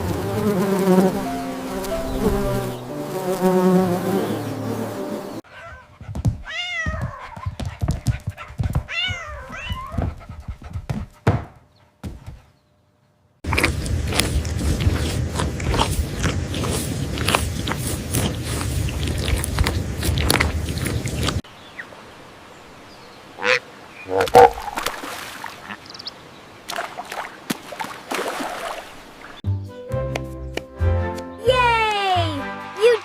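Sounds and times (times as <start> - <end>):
animal calls: 23.4 - 26.1.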